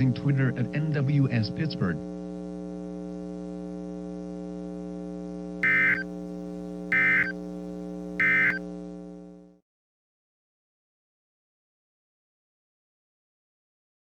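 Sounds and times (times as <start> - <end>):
electrical hum: 0.0 - 9.6
shrill digital data bursts: 5.6 - 6.0, 6.9 - 7.3, 8.2 - 8.6.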